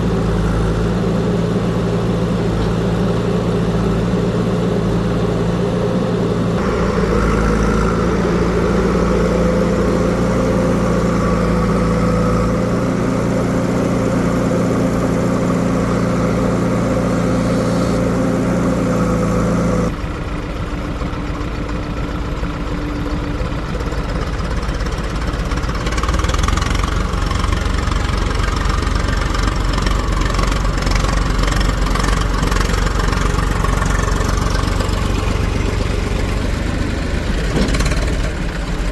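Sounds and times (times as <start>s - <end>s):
diesel engine idling: 0.0s - 38.9s
engine running: 0.0s - 38.9s.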